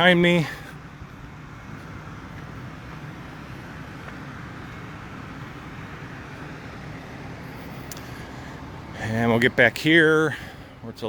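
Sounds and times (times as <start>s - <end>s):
cars humming on road: 0.0s - 11.0s.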